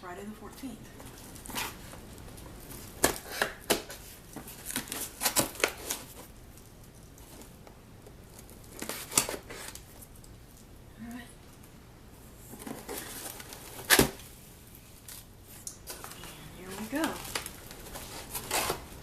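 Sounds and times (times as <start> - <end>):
packaging tearing and crinkling: 2.6 - 6.3, 8.3 - 10.0, 12.5 - 14.4, 15.0 - 19.0.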